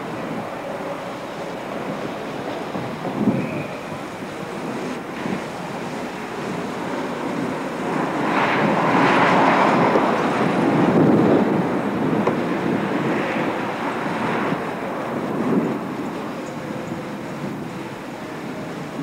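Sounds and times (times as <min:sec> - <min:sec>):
rain: 0:00.0 - 0:19.0.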